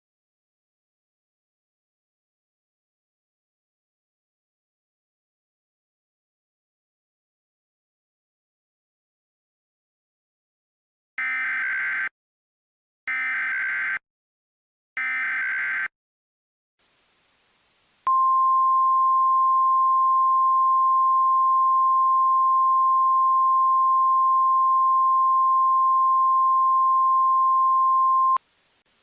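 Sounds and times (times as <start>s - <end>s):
faint hiss: 16.8s - 18.1s, 28.4s - 29.0s.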